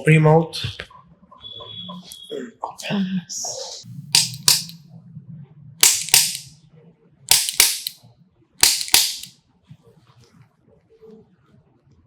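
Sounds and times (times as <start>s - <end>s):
sharp percussive slaps: 4.2s - 4.8s, 5.8s - 6.5s, 7.3s - 8.0s, 8.6s - 9.3s.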